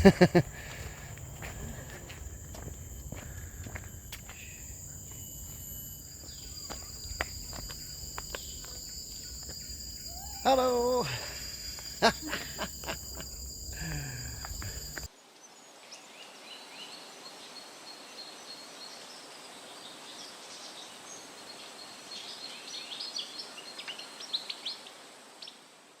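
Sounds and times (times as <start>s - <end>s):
faint steady high whine: 0.0s - 15.1s
forest birds chirping: 0.0s - 25.6s.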